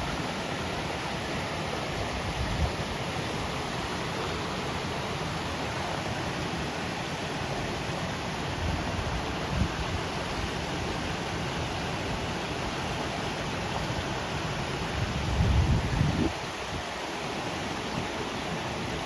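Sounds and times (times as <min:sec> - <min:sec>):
waterfall rushing: 0:00.0 - 0:15.1, 0:16.3 - 0:19.0.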